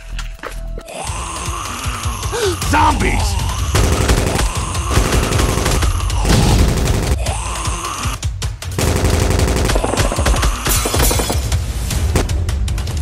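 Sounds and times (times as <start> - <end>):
action music with heavy beat: 1.2 - 13.0
rapid gunfire bursts: 3.6 - 7.3, 8.8 - 11.0.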